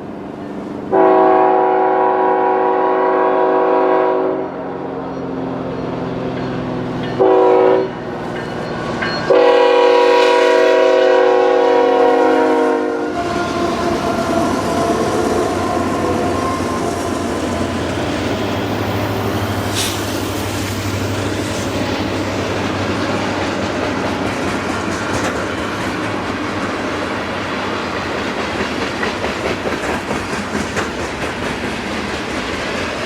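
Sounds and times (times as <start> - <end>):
train passing rumble: 0.0 - 33.0
locomotive air horn chord: 0.9 - 4.9, 7.2 - 8.0, 9.3 - 17.4
locomotive engine: 4.7 - 33.0.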